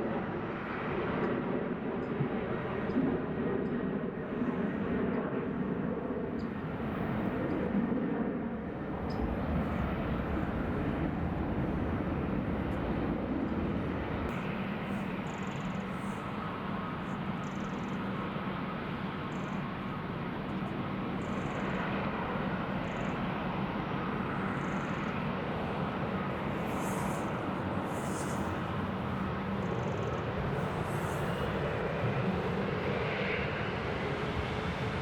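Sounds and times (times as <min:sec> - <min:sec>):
jet engines rushing: 0:08.5 - 0:35.0.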